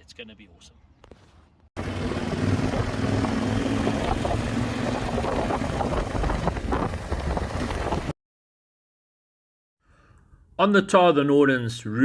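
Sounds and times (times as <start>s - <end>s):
road noise: 0.8s - 8.1s
motorcycle engine running: 1.8s - 8.1s
rushing wind: 1.8s - 8.1s.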